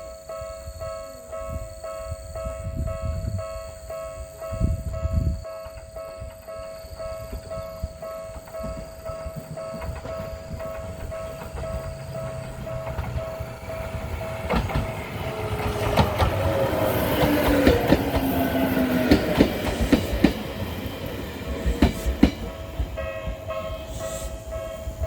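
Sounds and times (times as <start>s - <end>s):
electric train passing: 0.0s - 25.0s
level crossing warning bell: 0.0s - 25.0s
wheel clacks over rail joints: 6.2s - 23.7s.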